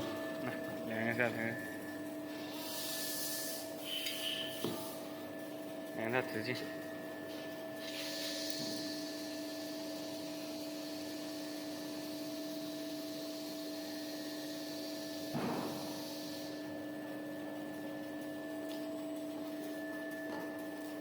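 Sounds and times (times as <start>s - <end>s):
machine hiss: 13.3s - 16.6s
loud thud: 15.4s - 15.9s.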